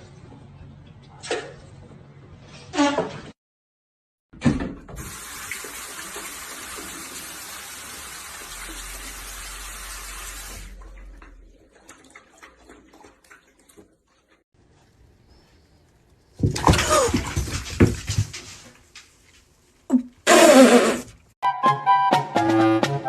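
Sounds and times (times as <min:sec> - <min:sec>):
tap water running: 0:04.9 - 0:14.3.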